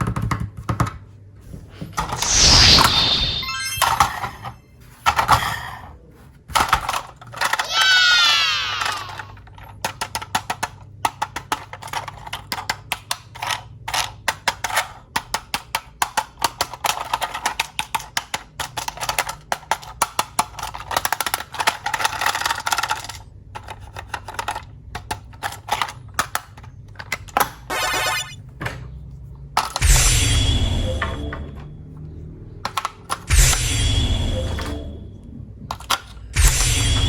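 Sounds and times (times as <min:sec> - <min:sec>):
short falling squeal: 0:02.2 - 0:04.5.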